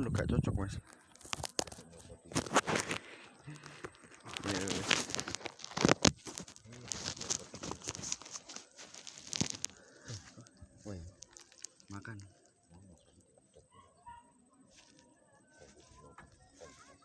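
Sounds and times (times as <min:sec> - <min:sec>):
faint voices: 0:00.0 - 0:17.0
rustling and crinkling: 0:00.8 - 0:17.0.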